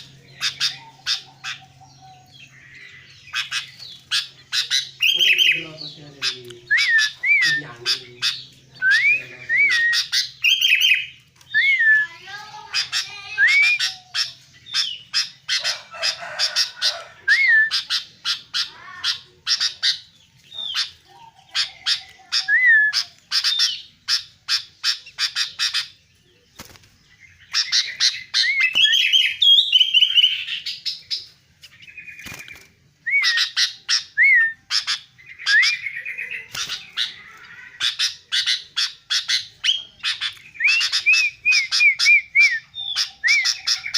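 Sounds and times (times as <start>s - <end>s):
bird chirping and whistling: 6.6s - 15.6s, 17.2s - 20.9s, 21.5s - 25.9s, 27.3s - 37.2s, 37.8s - 43.9s.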